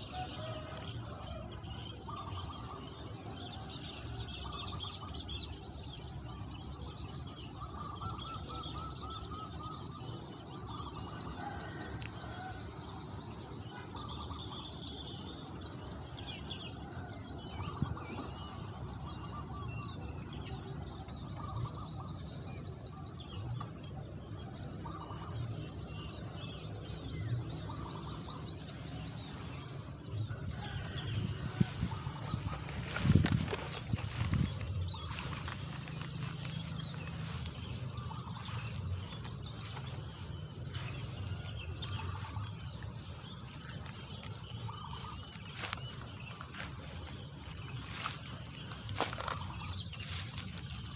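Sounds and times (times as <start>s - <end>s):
wild birds chirping: 0.0s - 50.9s.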